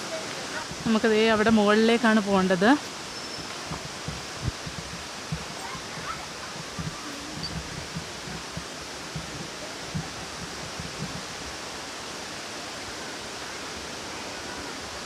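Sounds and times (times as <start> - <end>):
waterfall rushing: 0.0 - 15.0
soft low thumps: 3.4 - 11.4.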